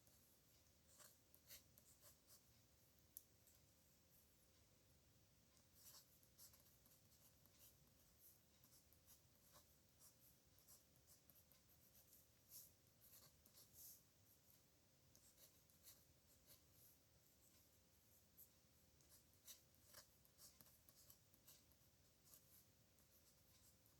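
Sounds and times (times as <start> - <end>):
pen scratching on paper: 5.7 - 17.8, 18.4 - 23.9.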